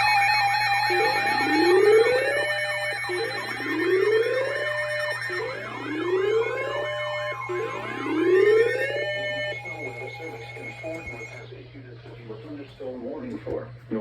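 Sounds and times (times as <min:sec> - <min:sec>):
held high tones: 0:00.0 - 0:11.4
electronic siren whoops: 0:00.0 - 0:11.5.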